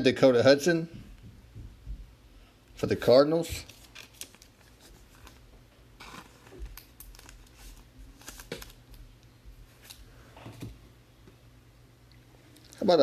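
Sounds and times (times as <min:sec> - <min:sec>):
trading cards rustling and clicking: 0:06.0 - 0:09.0.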